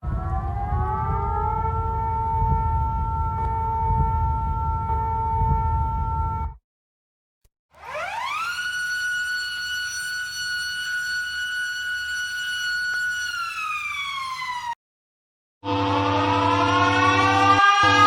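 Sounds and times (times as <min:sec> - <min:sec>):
warning siren: 0:00.0 - 0:06.6, 0:07.8 - 0:14.8, 0:15.6 - 0:18.0.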